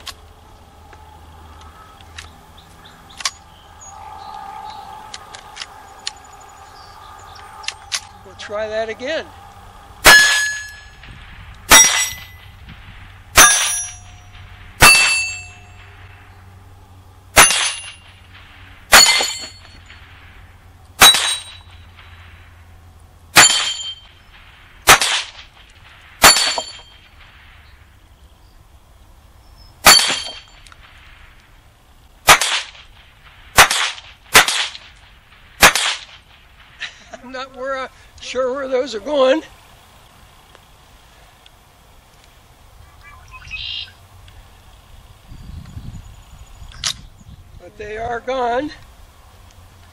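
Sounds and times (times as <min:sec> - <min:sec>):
metallic ringing of bullets on steel: 0:10.0 - 0:11.0, 0:11.7 - 0:12.6, 0:13.4 - 0:16.1, 0:17.4 - 0:20.1, 0:21.0 - 0:22.2, 0:23.4 - 0:24.3, 0:26.2 - 0:27.2, 0:29.8 - 0:30.7
rifle shots: 0:10.0 - 0:16.6, 0:17.3 - 0:22.6, 0:23.3 - 0:27.8, 0:29.8 - 0:31.2, 0:32.2 - 0:36.8.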